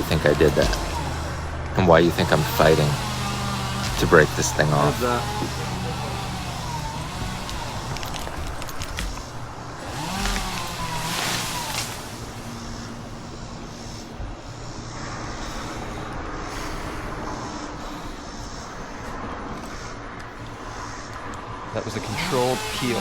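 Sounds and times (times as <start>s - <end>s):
sharp cracks: 0.0s - 14.2s
chainsaw running: 0.0s - 16.1s, 21.8s - 23.0s.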